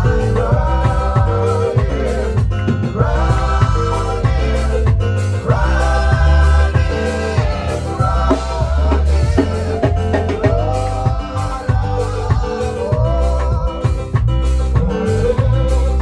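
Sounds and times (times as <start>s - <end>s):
drums: 0.0s - 16.0s
heavy bass: 0.0s - 16.0s
worship band playing: 0.0s - 16.0s.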